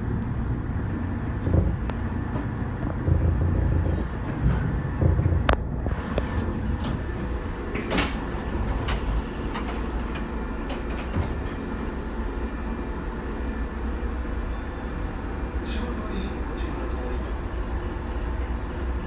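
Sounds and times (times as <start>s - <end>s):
electric train rumbling: 0.0s - 19.0s
sharp clicks and knocks: 1.4s - 11.9s.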